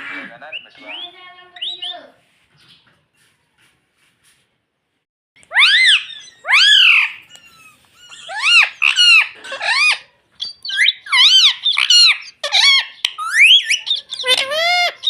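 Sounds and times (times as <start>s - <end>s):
parakeet squeaky calls: 0.1s - 2.1s, 5.5s - 15.0s.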